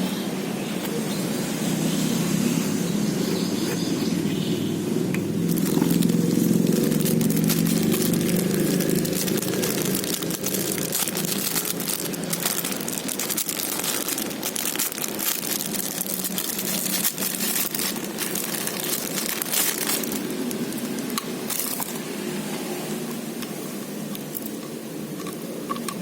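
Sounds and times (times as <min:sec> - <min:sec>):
packaging crinkling: 0:05.4 - 0:23.5.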